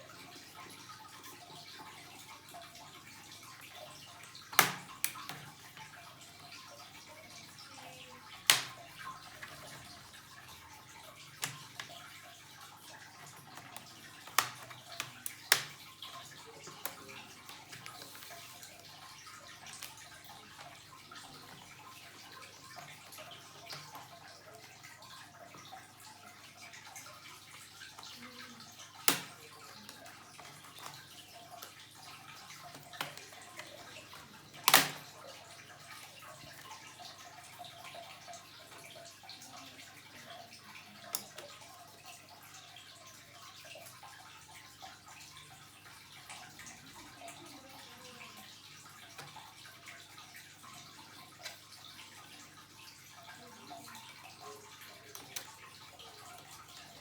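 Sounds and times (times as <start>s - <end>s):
clicks and taps of laptop parts: 4.5s - 5.5s, 8.5s - 8.8s, 29.0s - 29.4s, 34.6s - 35.1s.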